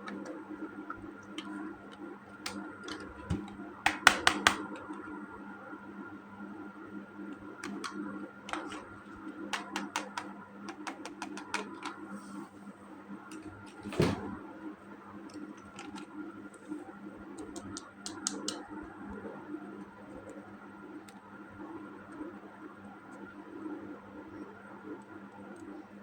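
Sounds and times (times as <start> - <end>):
plastic clicks and taps: 1.4 - 5.0, 7.6 - 12.0, 17.4 - 18.6.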